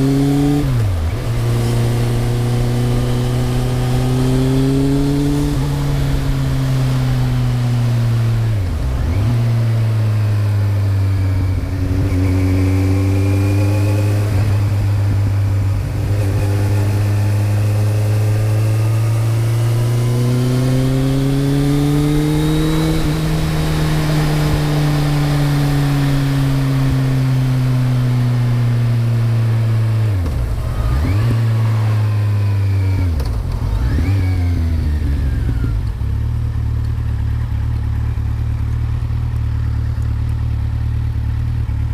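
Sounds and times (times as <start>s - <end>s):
motorcycle engine revving: 0.0s - 41.9s.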